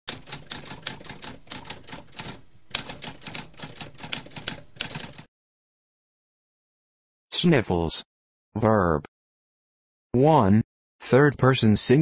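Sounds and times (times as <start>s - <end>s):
typewriter keys clacking: 0.1s - 5.3s.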